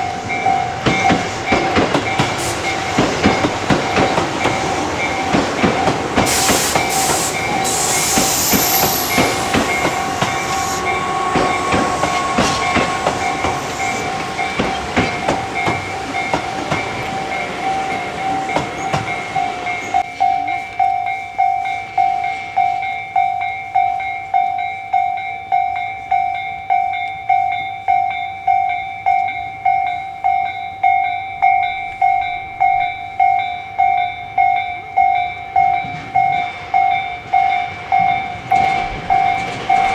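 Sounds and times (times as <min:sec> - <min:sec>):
train wheels clattering: 0:00.0 - 0:20.8, 0:35.2 - 0:39.9
crossing warning bell ringing: 0:00.0 - 0:39.9.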